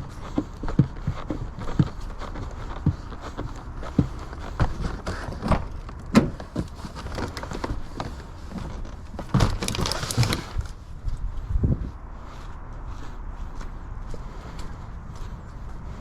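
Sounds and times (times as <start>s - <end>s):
irregular knocks and thumps: 0.0s - 10.6s
clatter: 0.3s - 10.8s.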